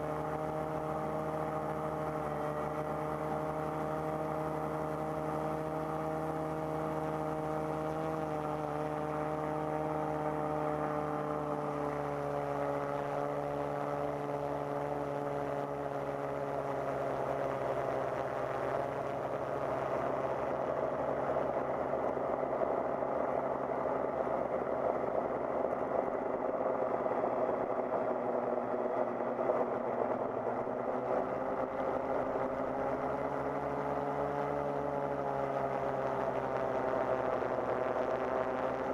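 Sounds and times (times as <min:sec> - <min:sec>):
quadcopter motors whining: 0:28.3 - 0:38.9.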